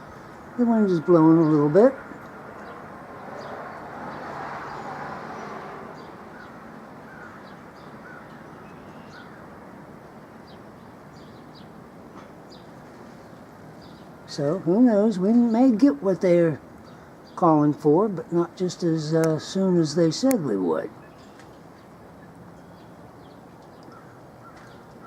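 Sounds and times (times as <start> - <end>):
wind blowing: 0.0 - 25.0
faint short bird calls: 6.3 - 9.4.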